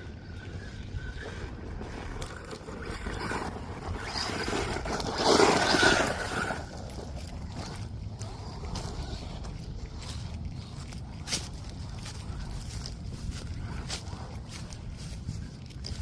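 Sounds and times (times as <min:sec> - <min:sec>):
toy car electric motor whine: 0:00.0 - 0:11.0
toy car tires rolling: 0:00.0 - 0:16.0.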